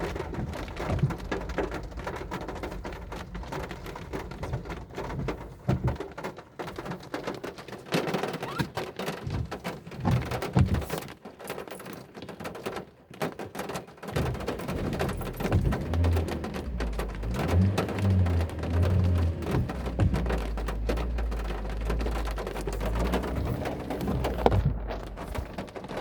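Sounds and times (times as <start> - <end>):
heavy rain falling: 0.0 - 8.6, 14.2 - 26.0
drips and splashes: 14.2 - 26.0
low thud: 15.0 - 26.0.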